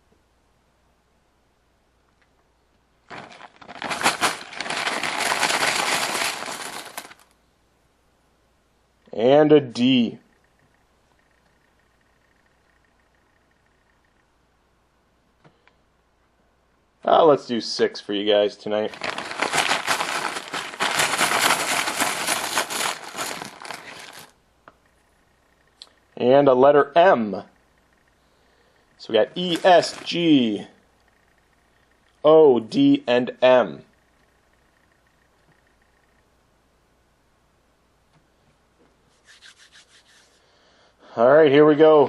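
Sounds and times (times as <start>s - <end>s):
rummaging through bag of pieces: 3.1s - 7.3s, 18.8s - 24.3s, 29.4s - 30.2s
small hard objects rattling: 3.1s - 7.3s, 18.8s - 24.4s, 29.4s - 30.2s.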